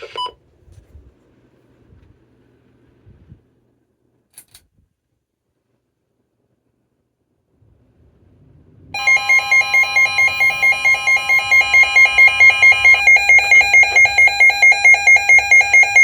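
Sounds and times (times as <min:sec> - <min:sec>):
pulsing electronic alarm beep: 0:09.0 - 0:16.0
steady warning tone: 0:09.0 - 0:16.0.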